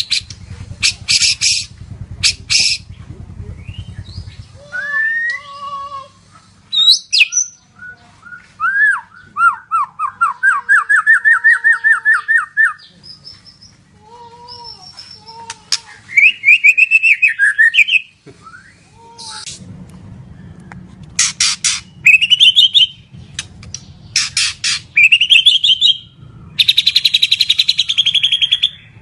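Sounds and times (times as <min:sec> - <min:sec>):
fast bird trill: 0:00.0 - 0:05.0, 0:06.6 - 0:07.6, 0:14.5 - 0:18.1, 0:21.2 - 0:29.0
bird singing loud whistles: 0:03.6 - 0:05.4, 0:06.7 - 0:13.7, 0:16.1 - 0:19.5, 0:21.2 - 0:23.1, 0:24.1 - 0:29.0.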